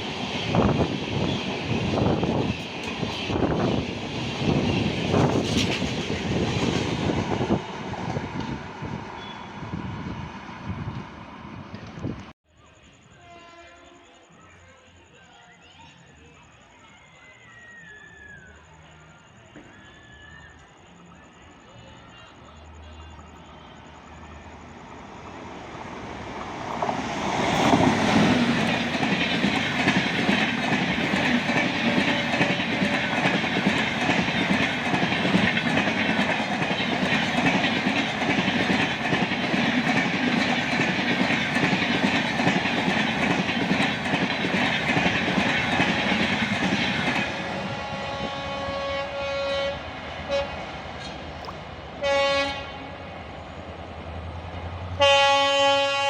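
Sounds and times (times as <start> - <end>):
train wheels clattering: 0.0 - 8.6, 26.4 - 47.4
train rumbling past: 0.0 - 16.3, 18.2 - 56.0
train horn blasts: 13.1 - 14.2, 31.2 - 33.3, 47.3 - 50.7, 52.0 - 53.1, 55.0 - 56.0.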